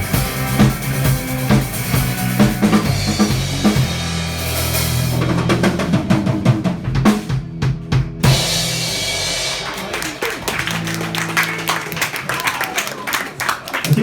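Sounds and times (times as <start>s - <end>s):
drum kit hits: 0.0s - 11.0s
rock band playing: 0.0s - 13.4s.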